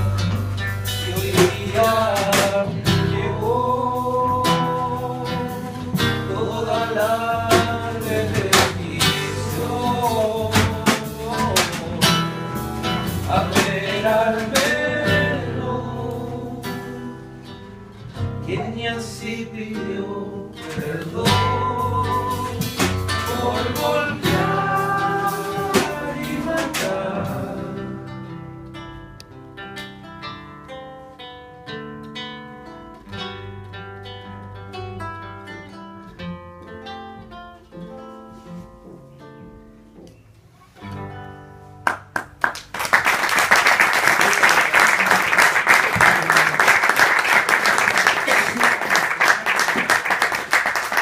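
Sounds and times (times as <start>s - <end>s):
acoustic guitar picking: 0.0s - 42.4s
audience applause: 41.8s - 51.0s.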